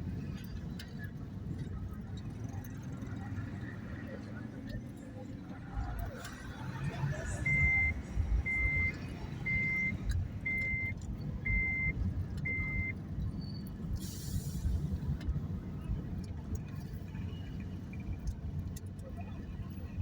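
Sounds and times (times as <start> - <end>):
vehicle warning beeper: 7.3 - 13.7
brief hiss: 13.9 - 15.0.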